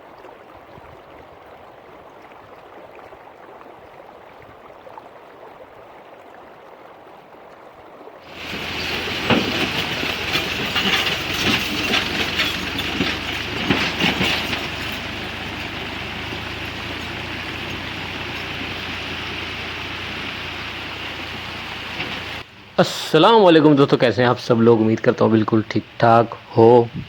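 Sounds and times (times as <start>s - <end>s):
tractor passing: 8.2s - 27.0s
trailer clattering and banging: 8.3s - 26.2s.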